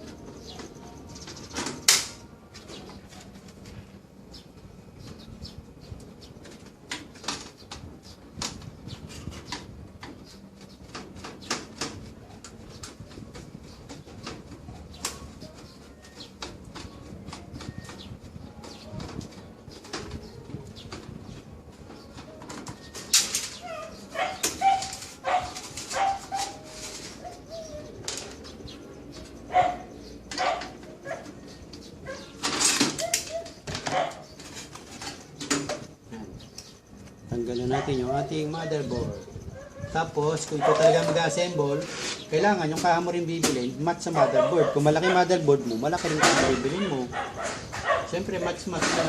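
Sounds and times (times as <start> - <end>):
dog barking: 24.1 - 26.6, 29.5 - 31.3, 33.9 - 34.2, 37.7 - 38.8, 39.6 - 41.2, 44.1 - 45.4, 46.1 - 48.6.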